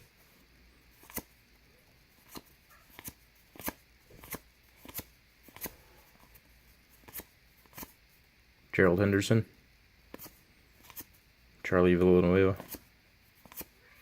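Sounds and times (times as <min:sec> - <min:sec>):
trading cards snapping: 0:01.0 - 0:01.3, 0:02.2 - 0:05.8, 0:07.0 - 0:07.9, 0:10.1 - 0:11.1, 0:12.6 - 0:13.8.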